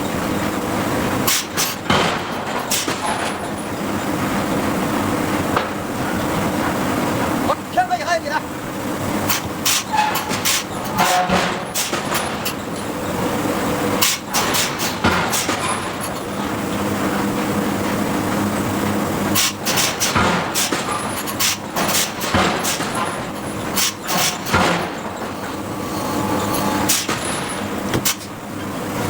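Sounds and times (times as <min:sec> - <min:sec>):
machinery hum: 0:00.0 - 0:29.0
forging hammer striking steel: 0:09.6 - 0:12.2, 0:19.4 - 0:28.2.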